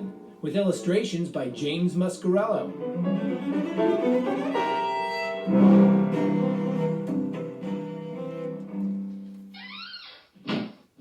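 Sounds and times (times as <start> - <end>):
bowed strings music: 0.0 - 9.5.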